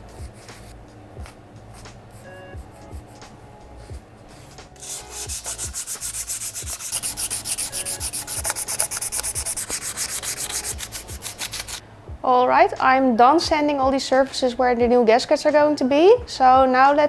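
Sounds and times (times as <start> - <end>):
sandpaper rubbing on metal: 4.4 - 11.8.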